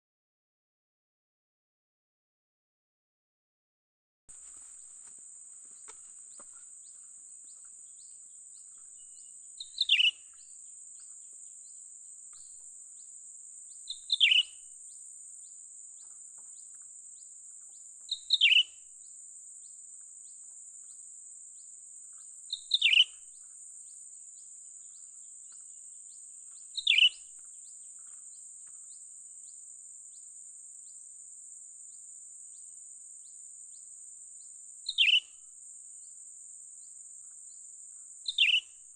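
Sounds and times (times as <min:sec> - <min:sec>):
steady high hiss: 0:04.3 - 0:06.4.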